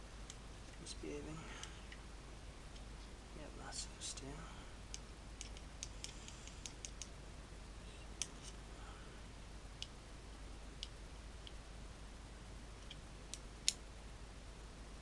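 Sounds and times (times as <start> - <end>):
magnet clicking on steel parts: 4.9 - 7.1, 8.2 - 8.6, 12.8 - 13.8.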